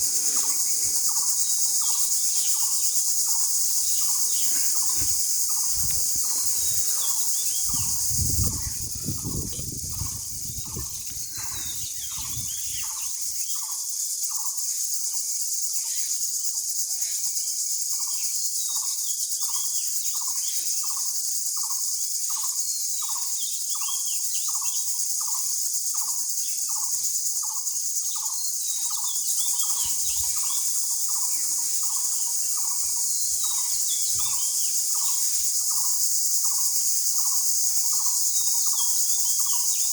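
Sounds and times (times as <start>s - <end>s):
crickets shrilling: 0.0s - 13.7s, 22.7s - 39.9s.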